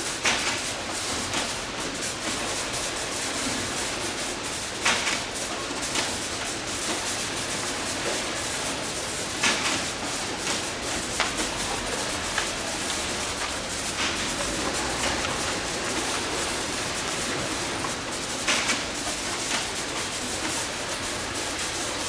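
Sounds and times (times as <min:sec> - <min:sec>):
baler machine running: 0:07.6 - 0:22.0.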